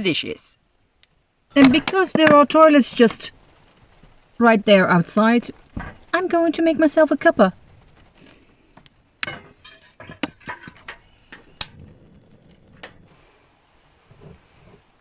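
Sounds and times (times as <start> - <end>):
tea things clicking and knocking: 1.6 - 4.2, 5.4 - 13.1.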